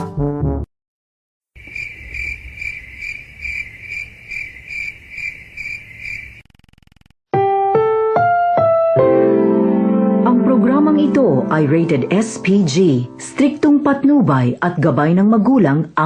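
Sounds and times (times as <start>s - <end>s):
crickets chirping: 1.6s - 6.9s.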